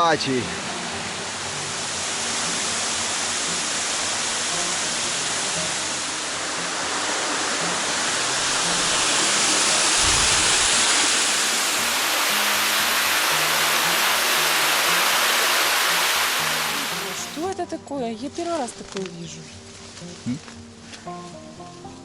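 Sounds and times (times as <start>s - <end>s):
waterfall rushing: 0.0s - 17.5s.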